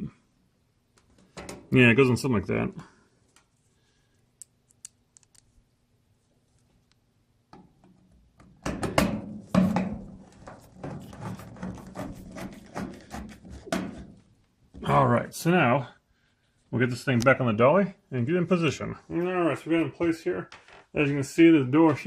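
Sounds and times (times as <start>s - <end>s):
knocks and scrapes of handling appliance: 7.6s - 14.3s.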